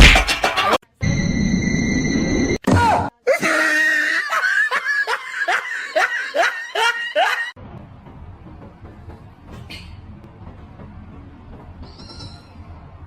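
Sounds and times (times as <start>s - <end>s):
hearty laughter: 3.3s - 7.6s.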